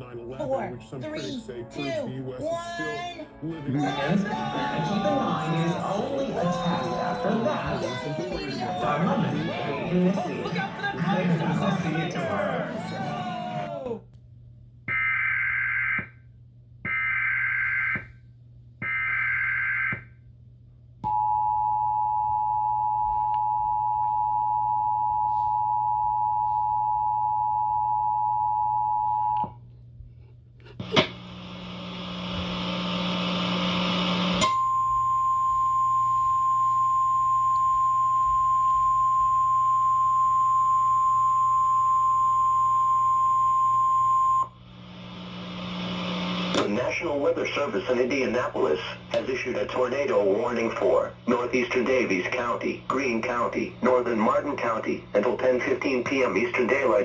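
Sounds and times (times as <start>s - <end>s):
steady warning tone: 31.4s - 57.0s
static hiss with crackle: 44.6s - 46.7s.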